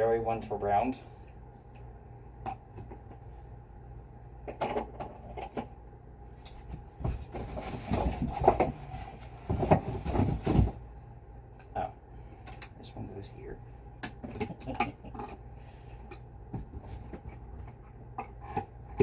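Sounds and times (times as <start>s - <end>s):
cardboard box rustling: 6.6s - 10.8s.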